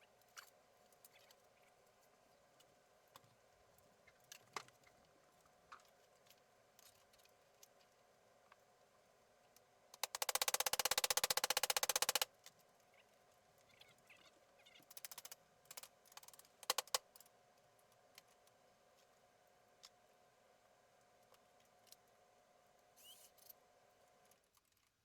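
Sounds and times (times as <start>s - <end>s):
rapid ratchet-like clicks: 10.0s - 12.3s, 14.9s - 17.3s
tools and parts clicking: 10.0s - 12.3s, 15.0s - 17.3s.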